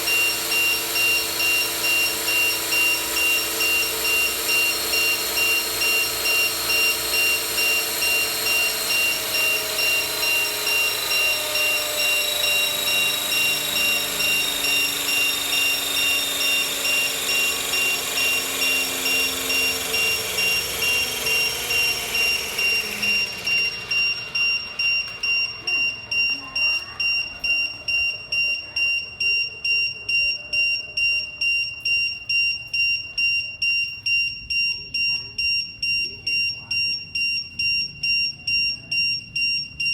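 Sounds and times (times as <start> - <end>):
rc helicopter motor and rotor whine: 0.0 - 31.9
high electronic beep: 0.0 - 39.9.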